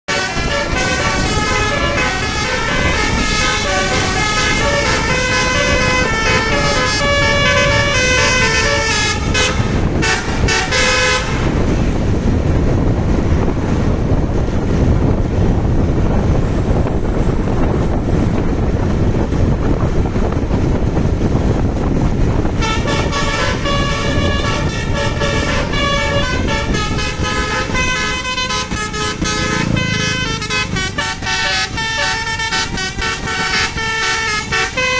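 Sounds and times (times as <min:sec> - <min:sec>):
road noise: 0:00.0 - 0:34.9
vehicle engine: 0:00.0 - 0:34.9
bus horn melody: 0:00.1 - 0:12.1, 0:22.4 - 0:34.9.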